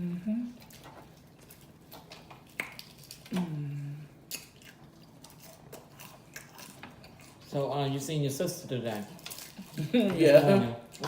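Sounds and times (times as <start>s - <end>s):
person humming: 0.0s - 0.6s, 3.3s - 4.1s
chewing and lip-smacking: 0.6s - 3.4s, 4.2s - 7.6s.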